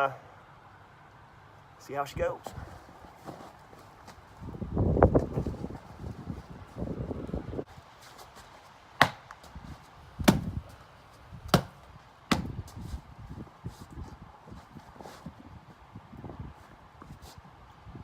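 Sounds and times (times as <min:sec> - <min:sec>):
sword chopping strikes: 0:09.0 - 0:09.3, 0:10.2 - 0:10.6, 0:11.5 - 0:12.6.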